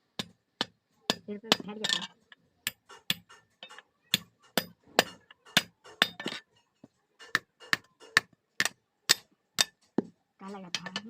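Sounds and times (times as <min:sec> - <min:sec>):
hammer striking steel on anvil: 0:02.6 - 0:06.4.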